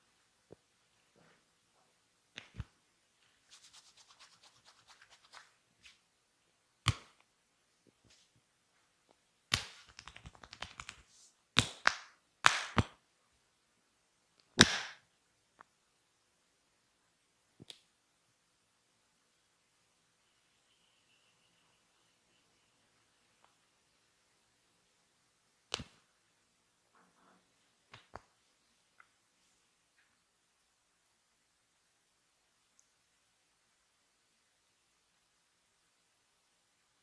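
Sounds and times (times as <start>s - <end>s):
hand slaps on skin: 11.6s - 13.0s, 14.6s - 15.0s.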